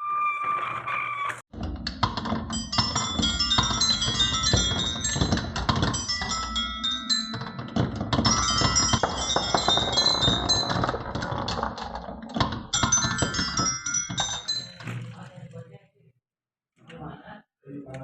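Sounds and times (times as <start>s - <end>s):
marbles clattering down wooden run: 1.6s - 15.1s
high ringing tones: 2.4s - 11.0s, 12.7s - 14.8s.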